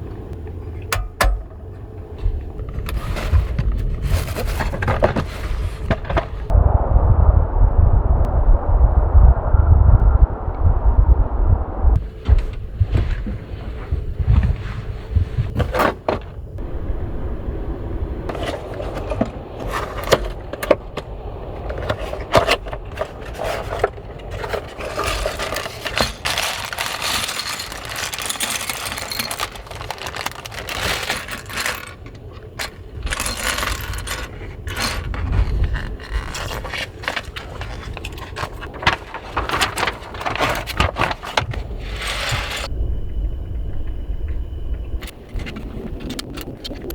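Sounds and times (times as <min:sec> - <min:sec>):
steady low rumble: 0:00.0 - 0:46.9
small objects clinking and scraping: 0:21.6 - 0:42.7.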